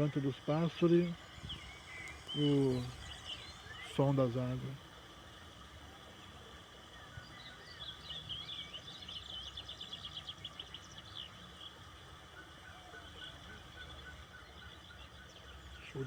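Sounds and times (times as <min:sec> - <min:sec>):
birds chirping and whistling: 0:00.0 - 0:04.6
steady background noise: 0:00.0 - 0:16.0.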